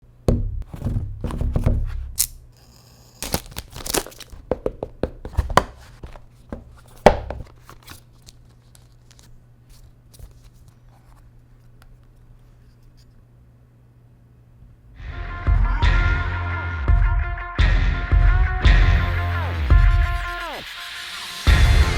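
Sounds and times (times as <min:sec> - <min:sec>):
plastic parts clicking: 0:02.2 - 0:02.4, 0:03.2 - 0:04.6
packaging tearing and crinkling: 0:03.2 - 0:04.5, 0:05.3 - 0:11.0.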